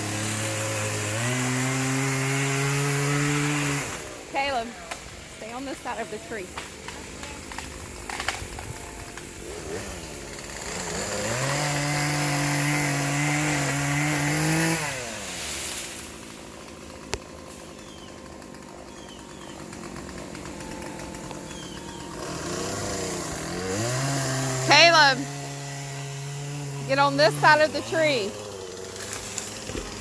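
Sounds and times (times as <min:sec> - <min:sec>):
chainsaw revving and idling: 0:00.0 - 0:30.0.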